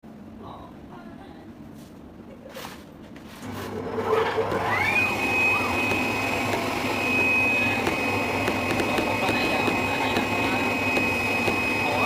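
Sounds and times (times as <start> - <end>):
machine motor whine: 3.4 - 12.0.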